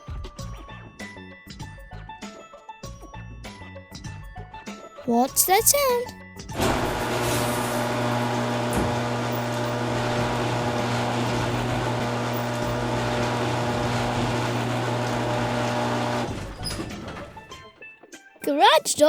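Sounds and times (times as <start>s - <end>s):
garage door opener motor hum: 6.6s - 17.6s
garage door rattling: 16.2s - 17.6s.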